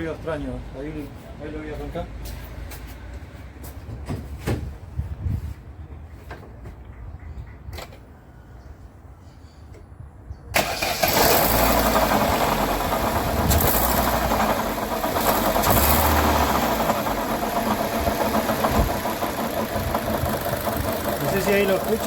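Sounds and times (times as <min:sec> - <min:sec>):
car engine cranking and starting: 0:10.6 - 0:22.0
car engine idling: 0:10.6 - 0:22.0.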